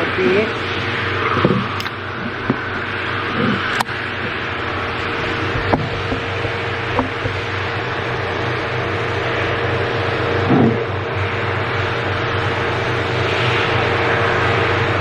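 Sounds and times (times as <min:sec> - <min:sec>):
low hum: 0:01.1 - 0:10.0
steady rushing noise: 0:02.0 - 0:09.1.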